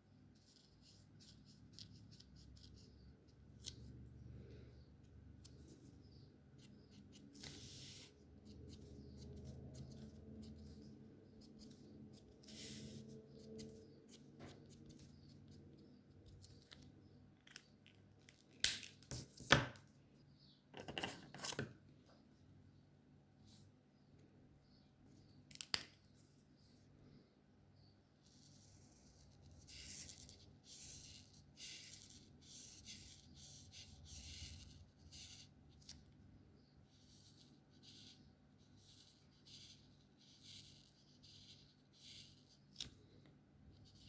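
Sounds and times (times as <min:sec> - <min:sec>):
marker strokes on paper: 0:05.4 - 0:16.1, 0:28.2 - 0:36.0, 0:36.8 - 0:43.0, 0:43.7 - 0:44.0.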